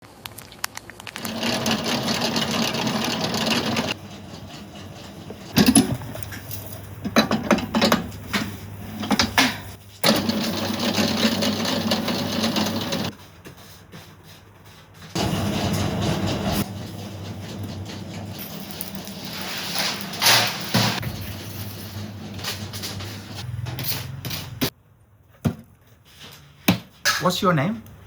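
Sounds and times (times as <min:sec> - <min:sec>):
utensils clattering: 0:01.2 - 0:13.1, 0:15.2 - 0:24.7.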